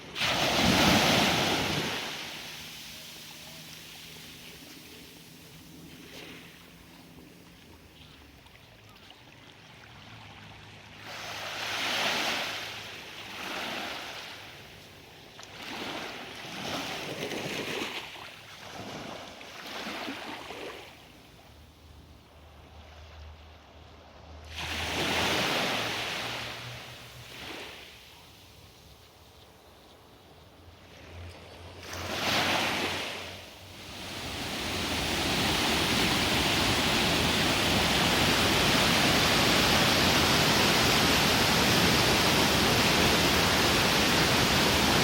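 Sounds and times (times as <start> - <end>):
sea surf washing onto shore: 0.0 - 6.9, 31.8 - 45.0.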